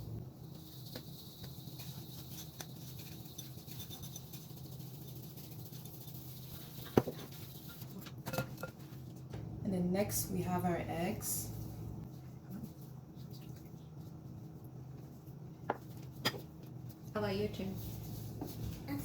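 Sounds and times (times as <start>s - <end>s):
sifter scratching and pattering: 0.3s - 8.0s.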